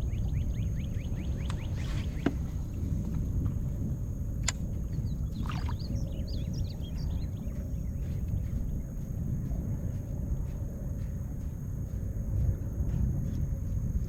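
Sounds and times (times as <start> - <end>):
small birds chirping: 0.0 - 13.8
steady low rumble: 0.0 - 14.0
sharp clicks: 4.4 - 5.0.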